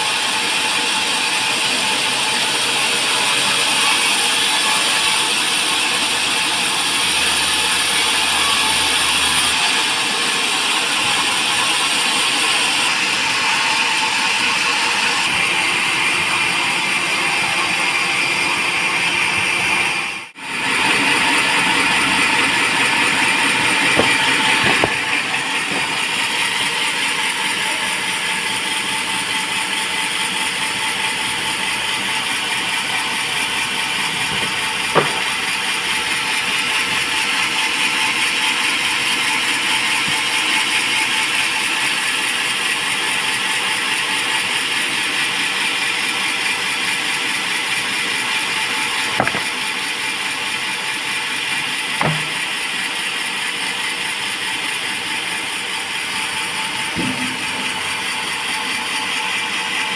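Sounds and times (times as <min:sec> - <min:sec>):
band saw cutting timber: 0:00.0 - 0:59.9
sharp knocks: 0:23.6 - 0:26.3, 0:34.3 - 0:35.5, 0:49.2 - 0:49.7, 0:52.0 - 0:52.6.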